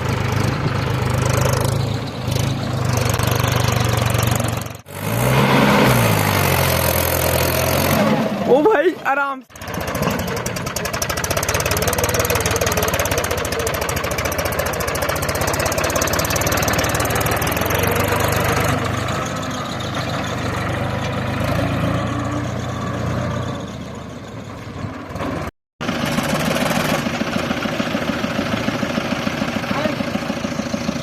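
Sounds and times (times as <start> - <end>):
diesel engine knocking: 9.5 - 19.1, 25.8 - 31.0.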